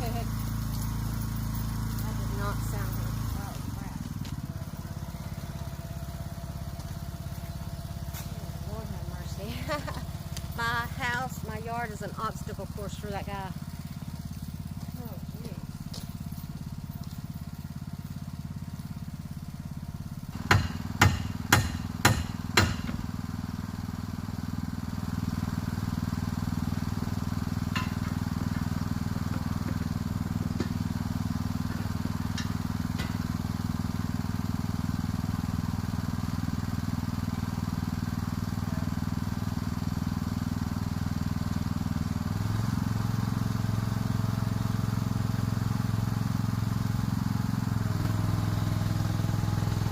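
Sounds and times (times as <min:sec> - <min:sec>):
engine running: 0:00.0 - 0:49.9
sharp knocks: 0:20.4 - 0:23.1.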